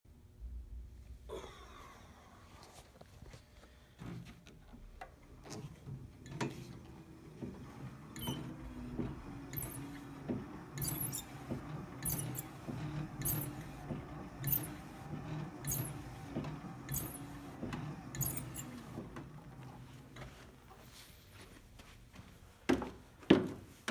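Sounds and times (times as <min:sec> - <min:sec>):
elliptical trainer humming: 0:08.2 - 0:19.0
sharp repeating click: 0:09.6 - 0:09.9, 0:10.8 - 0:11.3, 0:12.0 - 0:12.5, 0:16.9 - 0:17.2.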